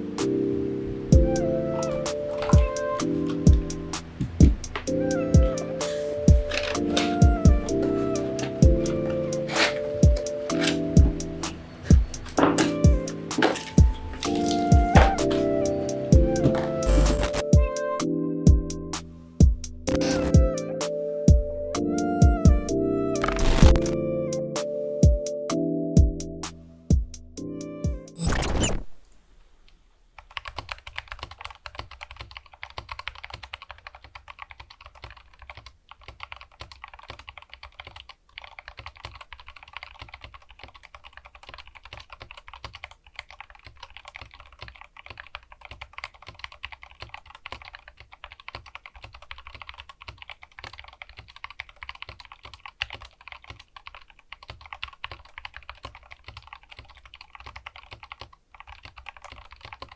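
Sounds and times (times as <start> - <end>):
fast keyboard typing: 1.2 - 17.6, 19.9 - 20.4, 30.2 - 59.9.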